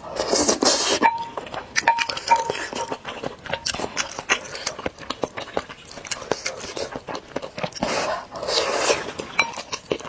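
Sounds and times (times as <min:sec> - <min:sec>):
utensil clinking against a bowl: 0:00.6 - 0:04.5, 0:09.2 - 0:10.0.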